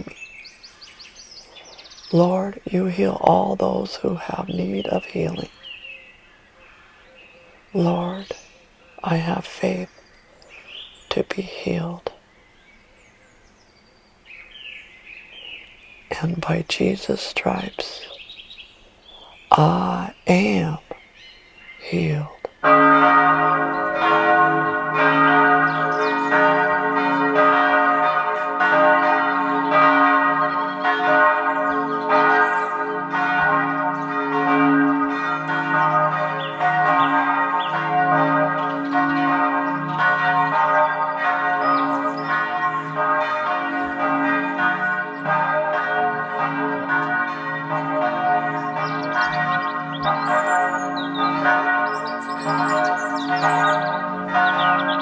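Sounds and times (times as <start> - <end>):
bells ringing in a peal: 0.0 - 12.1, 21.8 - 55.0
high bird chirps: 0.1 - 2.2, 48.8 - 55.0.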